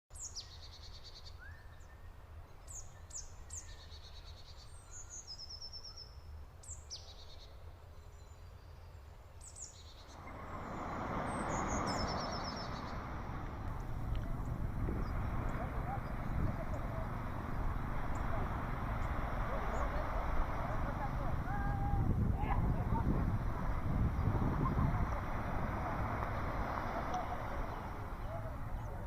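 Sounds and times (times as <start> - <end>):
low rumble of surf: 6.2 - 29.0
birds chirping and trilling: 9.4 - 29.0
wave washing in: 10.1 - 29.0.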